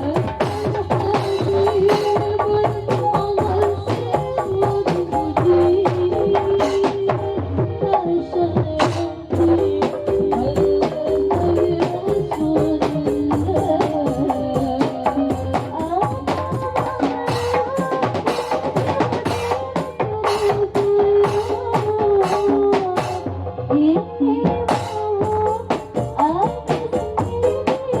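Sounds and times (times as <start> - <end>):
hand drums fast rhythm: 0.0 - 7.3, 15.4 - 23.4.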